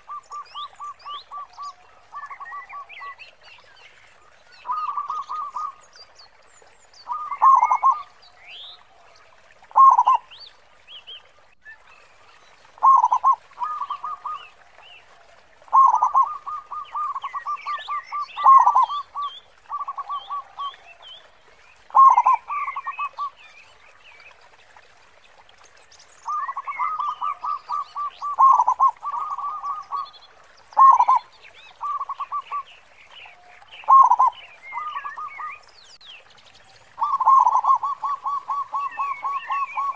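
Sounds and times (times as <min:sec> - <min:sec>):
dove cooing: 0:07.1 - 0:08.1, 0:12.8 - 0:14.4, 0:15.7 - 0:19.0, 0:21.9 - 0:23.3, 0:33.9 - 0:35.3, 0:37.0 - 0:39.9.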